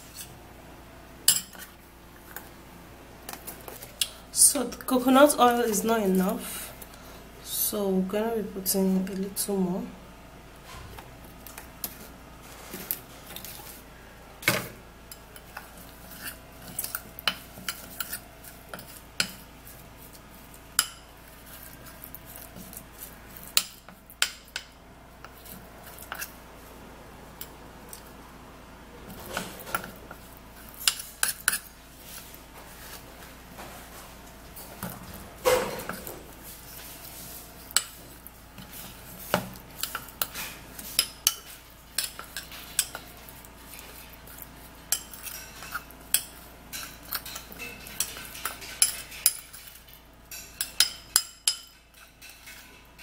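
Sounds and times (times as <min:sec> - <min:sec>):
spoon clinking against a bowl: 0:44.9 - 0:52.6.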